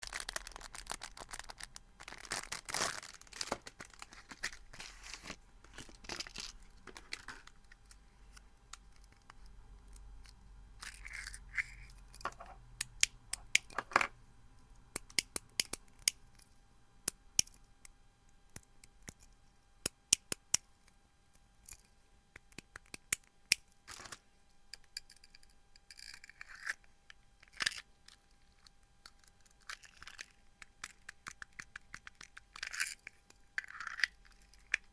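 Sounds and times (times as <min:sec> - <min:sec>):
rustling and tearing: 0:00.0 - 0:07.6.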